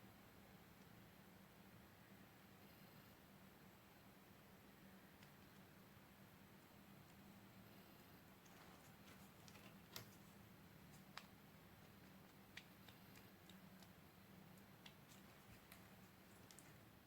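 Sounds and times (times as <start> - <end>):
faint sharp clicks and taps: 8.0 - 17.0.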